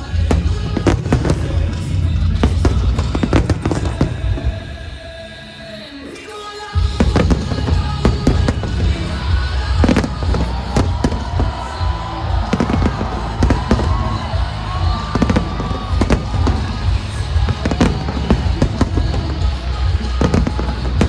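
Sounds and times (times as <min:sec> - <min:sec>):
deep rumble: 0:00.0 - 0:05.0, 0:06.8 - 0:21.0
fireworks bursting: 0:00.0 - 0:21.0
music playing: 0:00.0 - 0:21.0.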